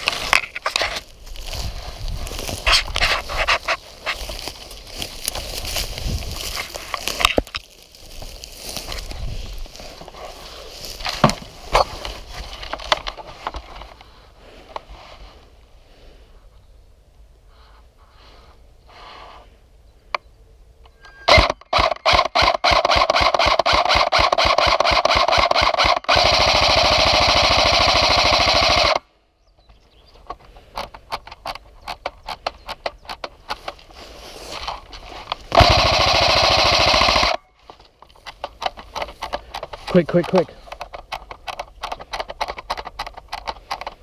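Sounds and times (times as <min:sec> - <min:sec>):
airsoft guns firing: 0:21.3 - 0:29.0, 0:35.5 - 0:37.4.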